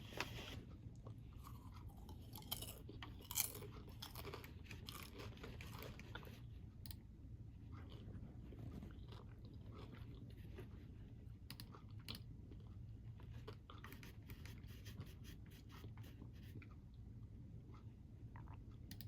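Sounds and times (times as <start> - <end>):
low steady rumble: 0.0 - 19.0
person chewing crunchy snack: 1.3 - 6.5, 7.8 - 10.8.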